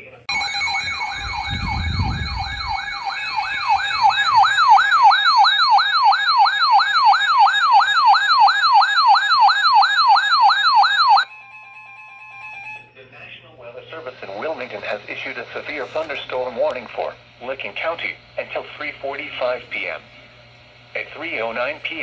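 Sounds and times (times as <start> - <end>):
electronic yelp siren: 0.3 - 12.9.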